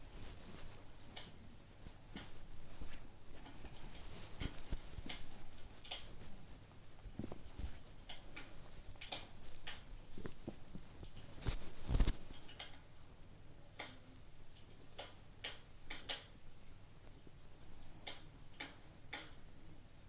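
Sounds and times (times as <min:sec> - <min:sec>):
wood fire crackling: 0:00.0 - 0:13.0.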